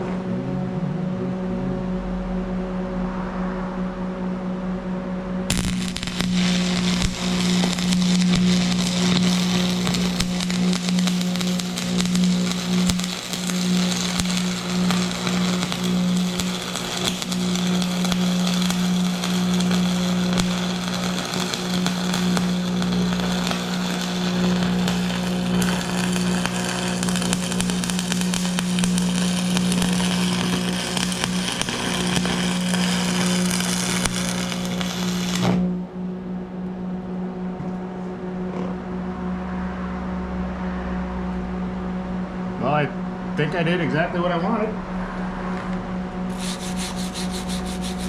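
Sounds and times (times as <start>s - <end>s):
low steady hum: 0.0s - 48.0s
welding arc crackling: 5.5s - 35.7s, 46.3s - 48.0s.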